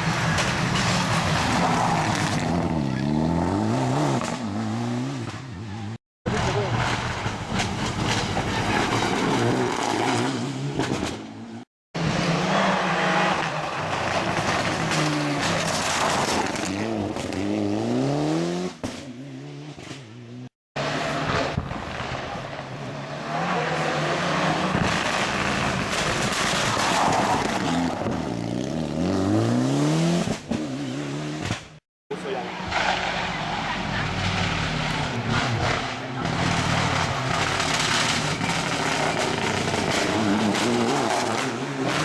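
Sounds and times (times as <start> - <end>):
rally car engines revving: 0.0 - 42.0.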